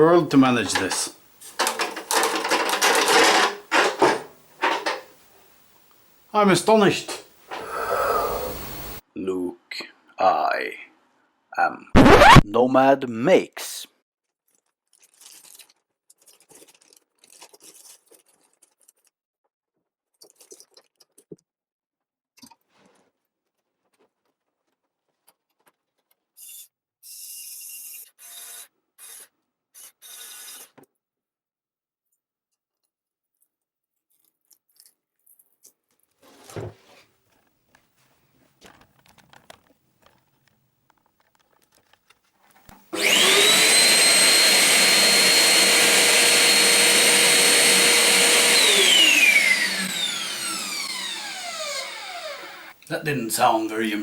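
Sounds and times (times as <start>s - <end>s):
dust extractor motor running: 0.0s - 5.0s, 42.7s - 52.8s
rubbing and scraping handling: 0.0s - 5.1s, 35.7s - 45.4s.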